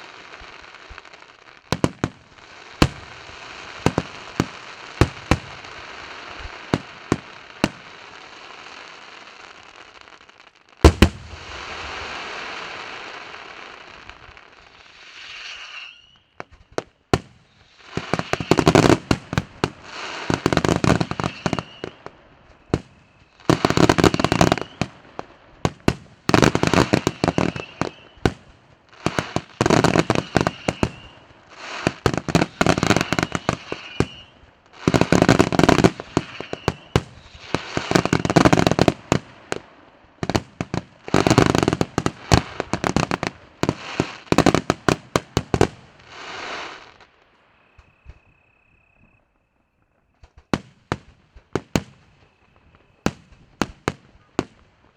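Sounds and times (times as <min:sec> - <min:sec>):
fireworks bursting and crackling: 0:00.0 - 0:48.4, 0:49.8 - 0:54.9
thin firework whistle: 0:14.5 - 0:25.0, 0:26.4 - 0:28.4, 0:29.0 - 0:39.0, 0:46.0 - 0:54.6.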